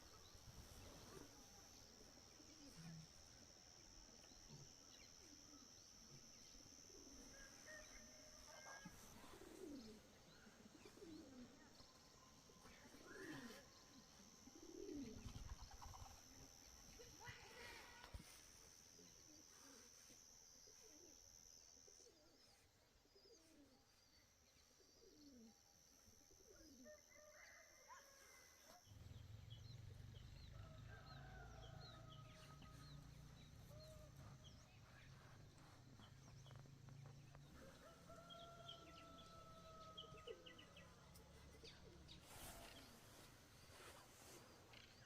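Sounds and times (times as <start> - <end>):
rooster crowing: 30.6 - 32.9, 37.6 - 40.5.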